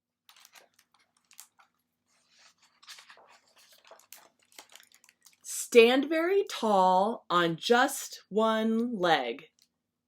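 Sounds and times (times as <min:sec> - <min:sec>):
book pages rustling and turning: 0:00.2 - 0:05.4.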